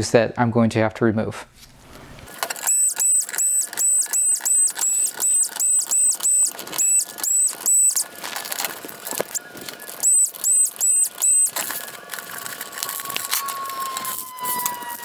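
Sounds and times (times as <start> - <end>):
electric screwdriver whirring: 2.2 - 15.0.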